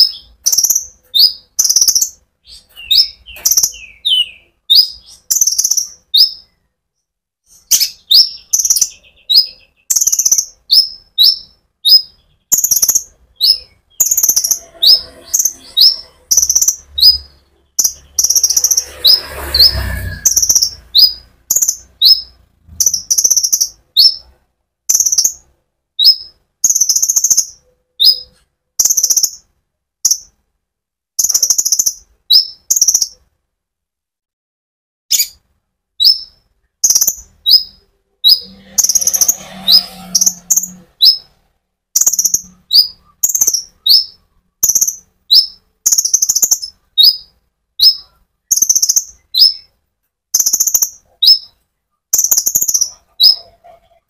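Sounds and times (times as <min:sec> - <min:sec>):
bird chirping high and sharp: 0:00.0 - 0:06.7, 0:07.4 - 0:30.4, 0:31.2 - 0:33.3, 0:35.1 - 0:54.0.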